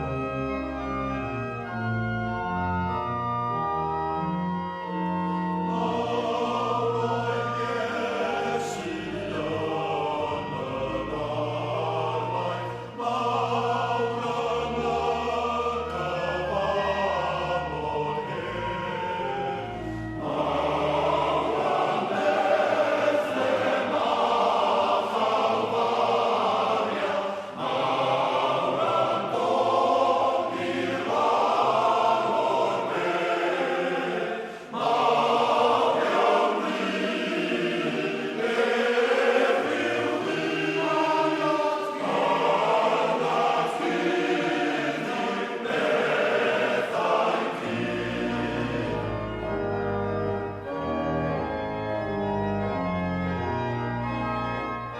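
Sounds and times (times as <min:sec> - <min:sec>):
voices singing in harmony: 0:04.2 - 0:51.5.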